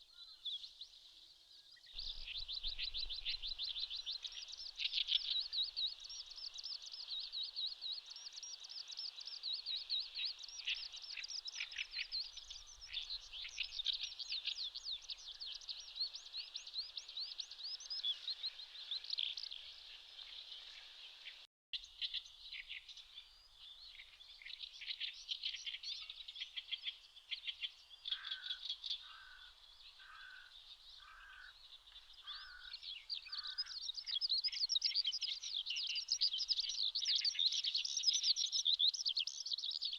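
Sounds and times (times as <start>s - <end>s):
skylark singing trills: 1.9s - 39.9s.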